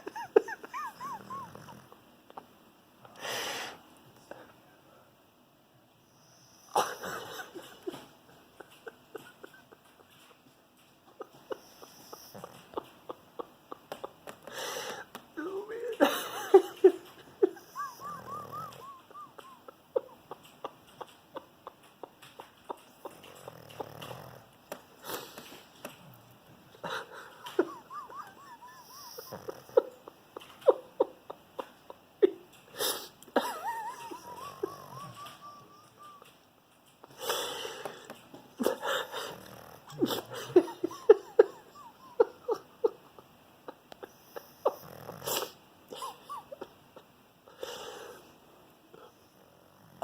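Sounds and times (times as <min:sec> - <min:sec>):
dog snoring and snorting: 0:00.9 - 0:02.0, 0:11.5 - 0:12.8, 0:17.8 - 0:18.8, 0:23.1 - 0:26.3, 0:28.7 - 0:30.0, 0:33.8 - 0:35.5, 0:38.8 - 0:41.0, 0:44.1 - 0:45.6, 0:49.4 - 0:50.0
dog snoring with squeaky whistles: 0:01.0 - 0:01.8, 0:11.8 - 0:12.5, 0:17.9 - 0:18.9, 0:23.2 - 0:24.4, 0:28.2 - 0:29.8, 0:34.5 - 0:36.2, 0:44.3 - 0:45.5.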